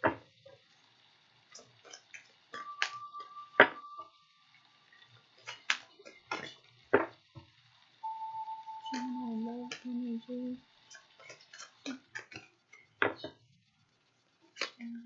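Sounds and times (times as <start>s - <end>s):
low held notes: 8.0s - 10.8s.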